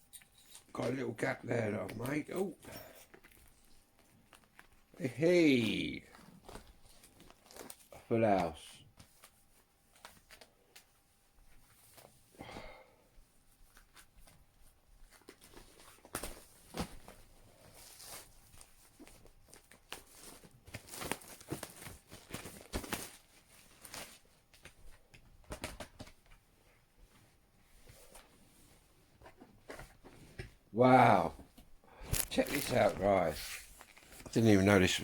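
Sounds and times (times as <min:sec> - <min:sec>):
plastic wrap crinkling and tearing: 0:03.2 - 0:04.9, 0:05.5 - 0:08.0, 0:15.1 - 0:24.6, 0:32.0 - 0:35.0.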